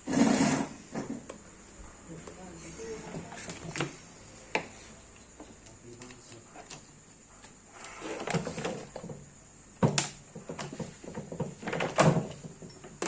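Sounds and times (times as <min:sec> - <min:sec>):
fan parts scraping and rattling: 0:00.0 - 0:01.4, 0:04.7 - 0:13.0.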